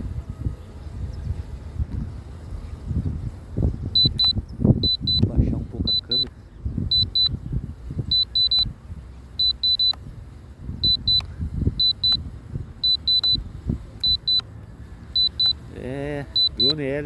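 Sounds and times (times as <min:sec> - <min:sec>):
wind buffeting microphone: 0:00.0 - 0:17.0
remote controller beeping: 0:04.0 - 0:06.3, 0:06.9 - 0:07.4, 0:08.1 - 0:08.7, 0:09.4 - 0:10.0, 0:10.8 - 0:12.2, 0:12.8 - 0:13.4, 0:14.0 - 0:14.5, 0:15.1 - 0:15.6, 0:16.2 - 0:16.9.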